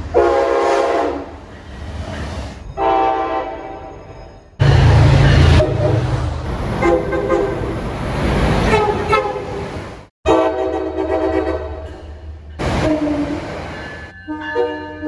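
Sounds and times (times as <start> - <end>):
passing train rumble: 0.0 - 15.0
train horn: 0.1 - 1.3, 2.8 - 4.0, 4.6 - 7.8, 8.6 - 12.0, 12.6 - 15.0
train horn steady chord: 0.1 - 1.3, 10.2 - 12.0.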